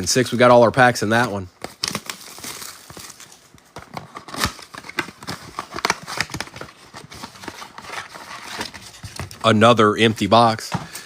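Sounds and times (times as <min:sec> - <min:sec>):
plastic wrap crinkling: 0:01.1 - 0:09.5.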